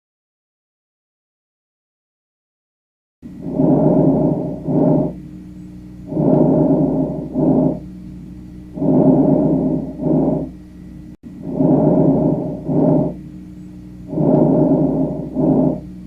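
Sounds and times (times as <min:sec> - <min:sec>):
faint steady hum: 0:03.3 - 0:16.0
breathing: 0:03.4 - 0:05.2, 0:06.1 - 0:07.8, 0:08.8 - 0:10.5, 0:11.4 - 0:13.2, 0:14.1 - 0:15.8.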